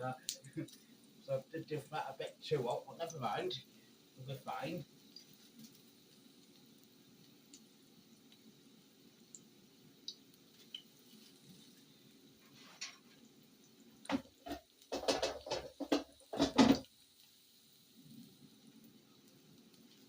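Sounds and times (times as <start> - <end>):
mushrooms frying in a pan: 0.0 - 20.0
cookware clattering: 14.1 - 16.8.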